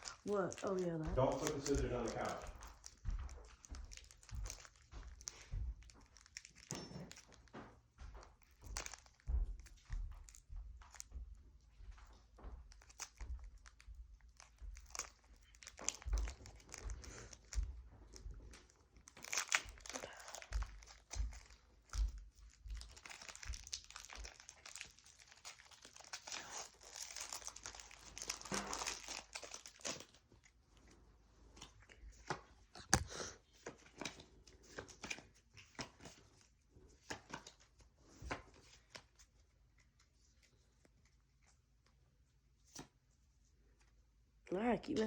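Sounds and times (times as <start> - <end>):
foil wrappers crinkling and tearing: 0.0 - 7.5, 8.4 - 11.0, 12.7 - 30.9.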